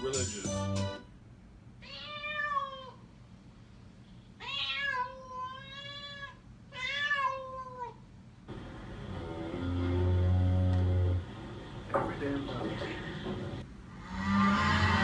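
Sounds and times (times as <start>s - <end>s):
cat meowing: 1.8s - 3.0s, 4.4s - 8.0s.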